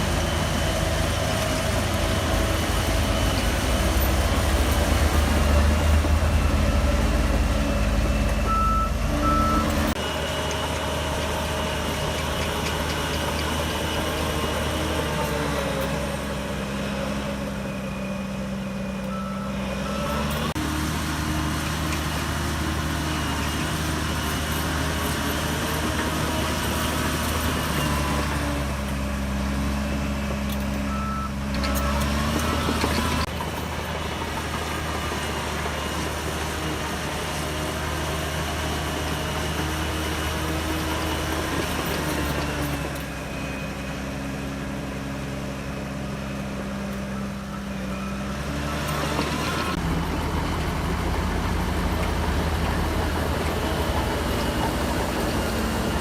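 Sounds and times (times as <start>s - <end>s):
bulldozer diesel engine under load: 0.0s - 56.0s
short beeping tone: 7.6s - 9.9s, 19.0s - 20.5s, 30.8s - 32.7s.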